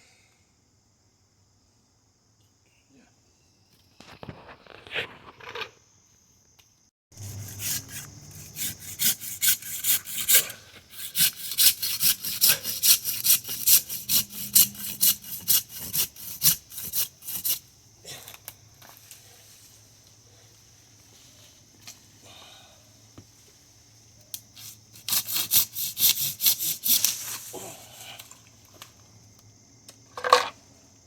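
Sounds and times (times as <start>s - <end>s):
hand saw cutting wood: 7.2s - 17.6s, 24.6s - 27.2s.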